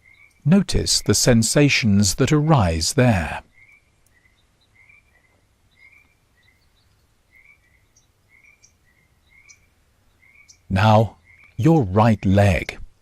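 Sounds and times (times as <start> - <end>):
faint high ticks: 3.7 - 4.2.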